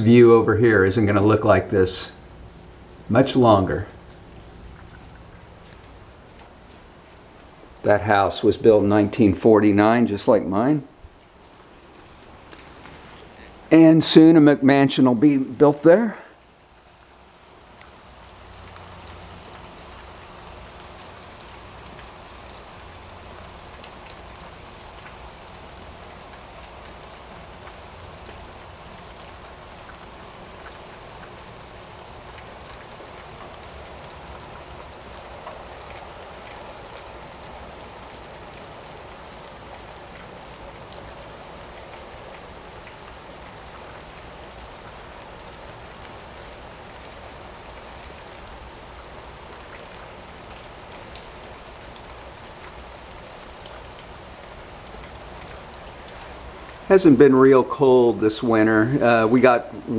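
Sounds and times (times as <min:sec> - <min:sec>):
steady rain patter: 0:00.0 - 0:59.9
single raindrops ticking: 0:16.9 - 0:56.9.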